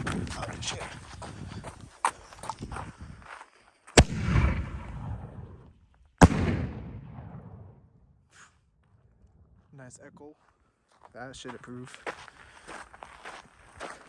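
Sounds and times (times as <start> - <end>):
firework launch boom: 4.0 - 5.6, 6.2 - 7.7.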